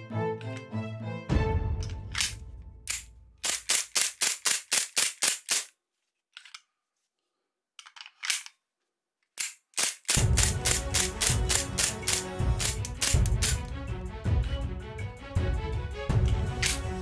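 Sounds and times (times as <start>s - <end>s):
toy gun firing: 2.2s - 5.7s, 9.4s - 13.6s.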